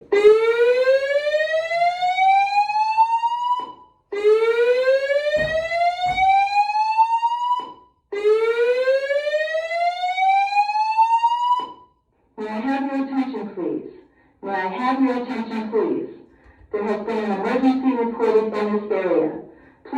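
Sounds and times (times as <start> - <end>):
fire alarm rising whoops: 0.1 - 11.9.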